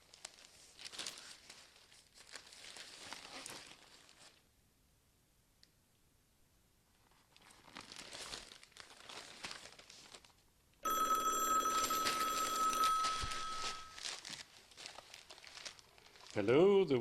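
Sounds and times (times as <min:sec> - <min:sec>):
telephone ringing: 0:10.8 - 0:14.0.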